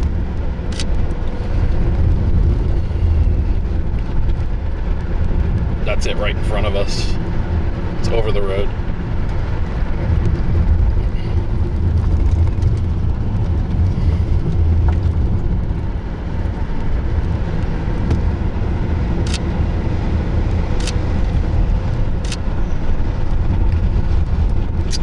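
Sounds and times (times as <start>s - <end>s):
car driving rumble from inside: 0.0s - 25.0s
sharp ticks: 19.2s - 19.5s.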